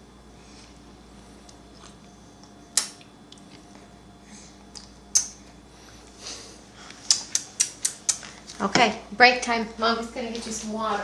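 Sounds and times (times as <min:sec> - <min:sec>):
baby biting a spoon: 0:07.1 - 0:08.2.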